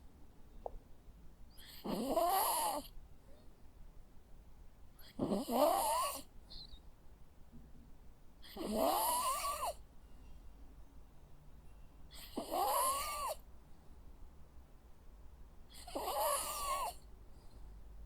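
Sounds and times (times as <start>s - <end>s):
dog snoring: 1.6s - 2.9s, 5.0s - 6.3s, 8.4s - 9.8s, 12.1s - 13.4s, 15.7s - 17.0s.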